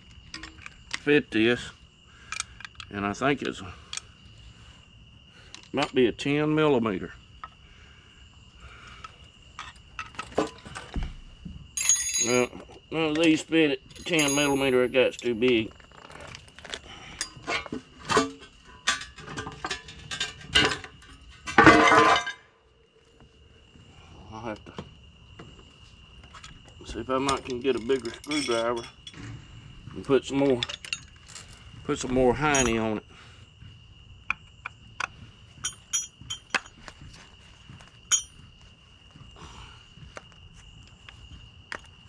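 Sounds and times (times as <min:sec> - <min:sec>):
metal wrenches clinking: 0:00.2 - 0:01.1, 0:11.8 - 0:22.4, 0:27.2 - 0:29.3, 0:30.3 - 0:31.5, 0:32.1 - 0:32.9, 0:35.6 - 0:36.8, 0:38.1 - 0:38.4
tools clattering rattle: 0:00.2 - 0:01.1, 0:09.6 - 0:11.0, 0:11.8 - 0:22.5, 0:27.2 - 0:29.4, 0:30.2 - 0:32.9, 0:35.6 - 0:37.2, 0:37.8 - 0:38.5.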